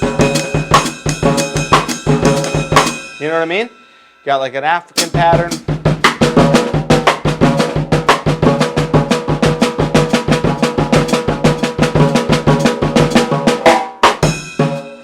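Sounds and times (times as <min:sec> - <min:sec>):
drum kit groove: 0:00.0 - 0:15.0.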